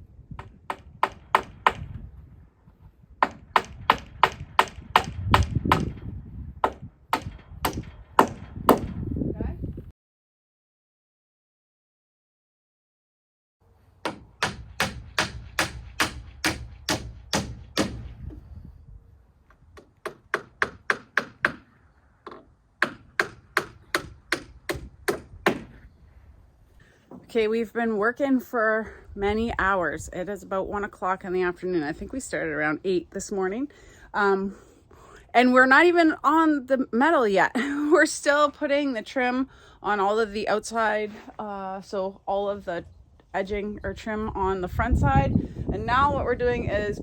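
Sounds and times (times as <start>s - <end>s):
hammer driving nails into wood: 14.0s - 18.3s, 19.8s - 25.8s.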